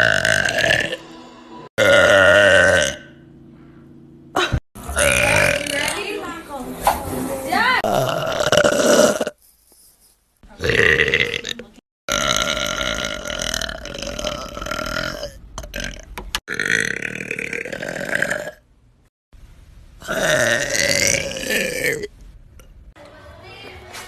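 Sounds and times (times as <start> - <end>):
woman burping: 1.8 - 3.1, 4.3 - 6.1, 7.8 - 9.3, 10.6 - 18.6, 20.0 - 22.1.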